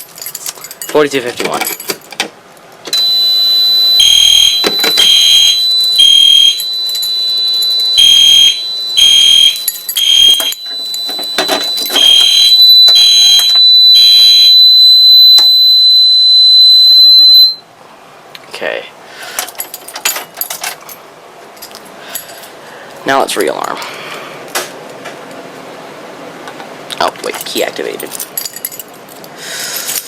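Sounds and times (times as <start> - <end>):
fire alarm horns beeping: 2.9 - 17.6
steady high-pitched tone: 3.0 - 17.6.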